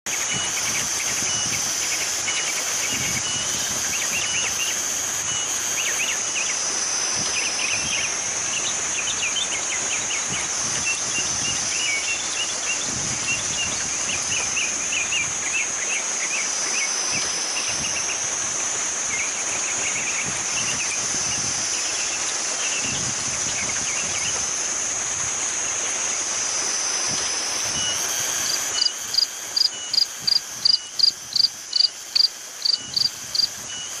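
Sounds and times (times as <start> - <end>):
insects buzzing: 0.1 - 34.0
insects chirping trills: 0.1 - 34.0.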